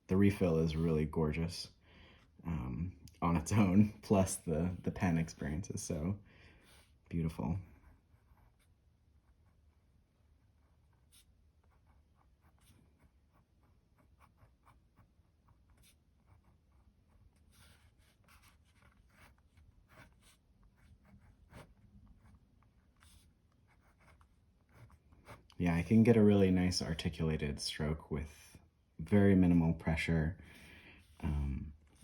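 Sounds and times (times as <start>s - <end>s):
pen scratching on paper: 7.8s - 25.5s.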